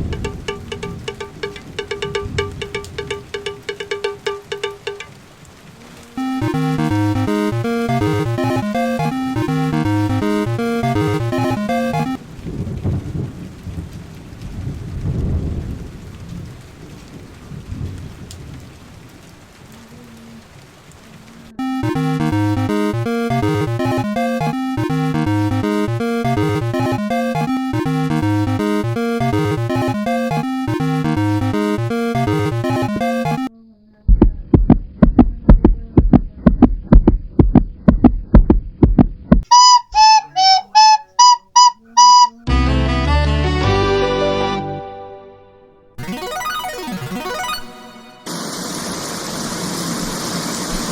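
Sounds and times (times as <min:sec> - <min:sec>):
low drum-like thuds: 0:00.0 - 0:05.2, 0:12.4 - 0:13.9, 0:34.1 - 0:39.5
thunder rumbling: 0:00.0 - 0:05.8, 0:09.4 - 0:19.8, 0:48.3 - 0:50.9
heavy rain: 0:00.0 - 0:33.5, 0:46.0 - 0:50.9
flute-like tune: 0:06.2 - 0:12.2, 0:21.6 - 0:33.5, 0:39.5 - 0:48.4.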